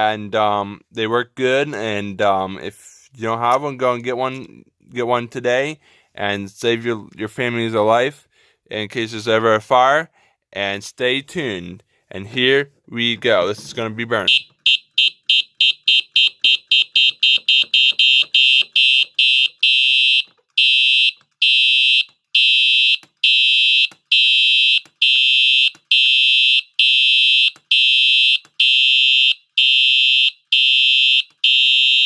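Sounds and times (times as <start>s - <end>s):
fire alarm horn blaring: 14.2s - 32.0s.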